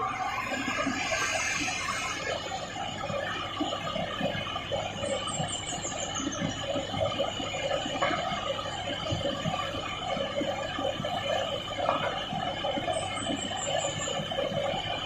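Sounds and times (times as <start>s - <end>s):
high-pitched squeal: 0.0s - 3.4s.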